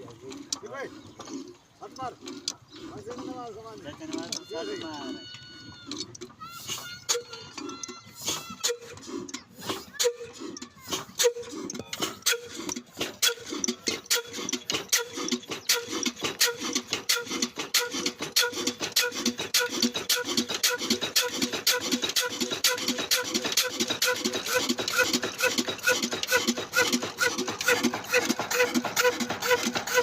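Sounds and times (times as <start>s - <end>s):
diesel engine running: 6.2s - 30.0s.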